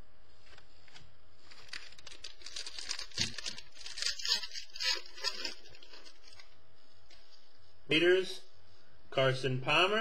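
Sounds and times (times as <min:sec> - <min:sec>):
cards rustling and scraping: 0:00.4 - 0:07.3.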